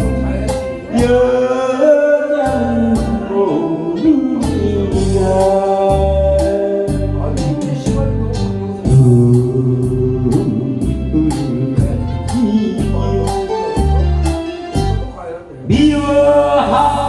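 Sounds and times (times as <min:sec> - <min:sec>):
person singing: 0:00.0 - 0:07.9, 0:08.8 - 0:14.1, 0:15.7 - 0:17.0
pop backing track: 0:00.0 - 0:17.0.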